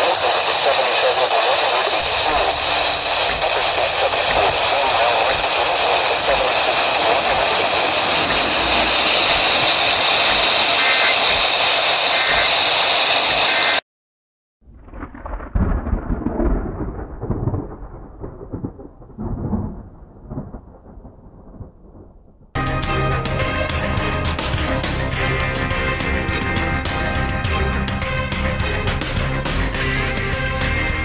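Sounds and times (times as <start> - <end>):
loud steady hiss: 0.0 - 13.8
thunder rumbling: 1.9 - 12.5, 14.7 - 22.6.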